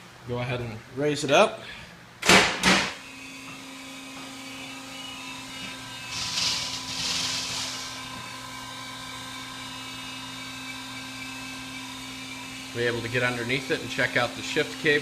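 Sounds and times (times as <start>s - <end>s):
electric pump motor hum: 2.9s - 15.0s
hiss: 6.1s - 8.0s.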